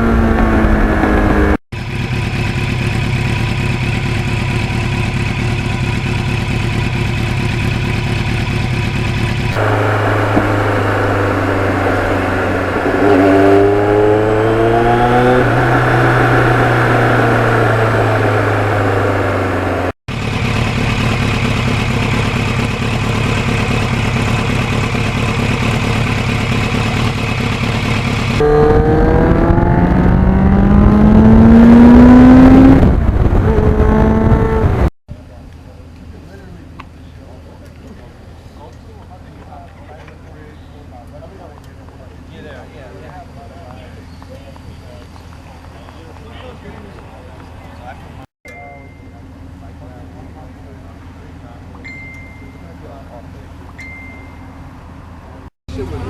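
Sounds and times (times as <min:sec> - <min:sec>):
motorcycle engine accelerating: 0:00.0 - 0:34.9.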